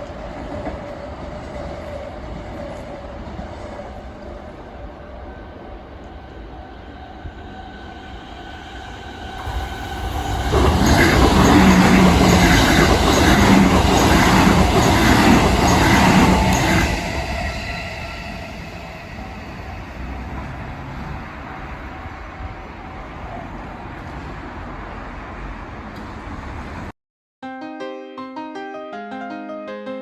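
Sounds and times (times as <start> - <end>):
electric train passing: 0.0 - 26.9
wheels clattering over rail joints: 9.4 - 17.5
crossing warning bell ringing: 9.5 - 20.4.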